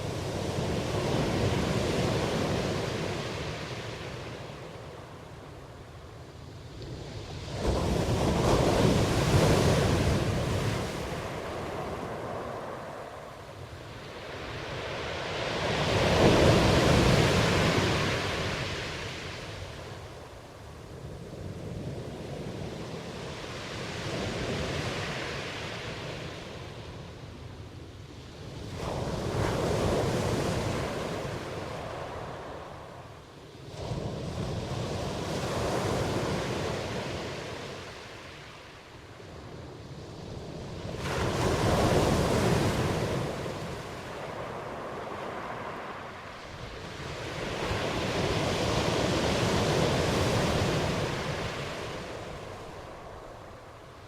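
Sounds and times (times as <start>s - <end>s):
waves crashing: 0.0s - 5.4s, 6.9s - 27.3s, 28.6s - 39.6s, 40.2s - 54.0s
ocean waves breaking: 7.0s - 20.0s, 40.7s - 54.0s.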